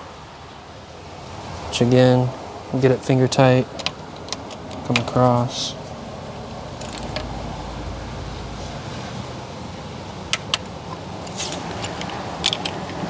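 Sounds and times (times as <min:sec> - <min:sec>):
steady background hiss: 0:00.0 - 0:13.0
metallic clicks of hand tools: 0:03.7 - 0:05.4, 0:06.8 - 0:07.3, 0:10.4 - 0:13.0.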